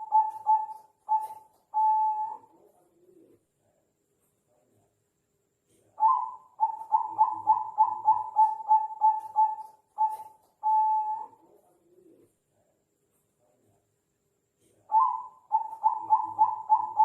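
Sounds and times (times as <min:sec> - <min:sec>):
dove cooing: 0:00.0 - 0:03.3, 0:06.0 - 0:12.2, 0:14.9 - 0:17.0.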